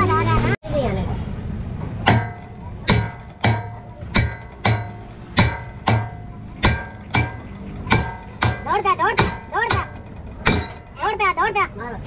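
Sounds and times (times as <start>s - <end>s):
hammer striking metal: 2.0s - 11.0s.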